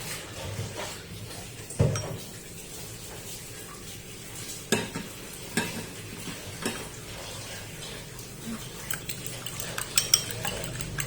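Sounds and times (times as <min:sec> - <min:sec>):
eggs beaten in a bowl: 0:08.5 - 0:11.0
utensil clinking against bowl: 0:08.6 - 0:11.0.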